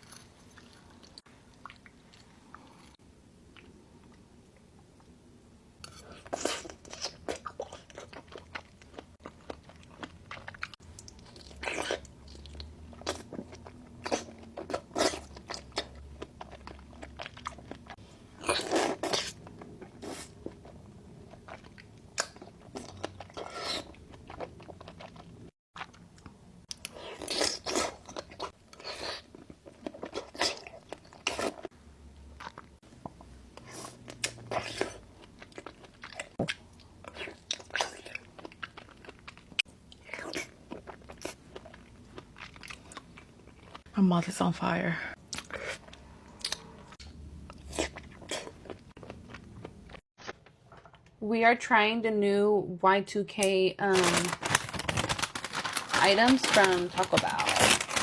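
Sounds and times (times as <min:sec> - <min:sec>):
person chewing crunchy food: 0:00.0 - 0:03.8, 0:05.9 - 0:31.8, 0:32.4 - 0:43.9, 0:45.2 - 0:51.0, 0:54.0 - 0:58.0.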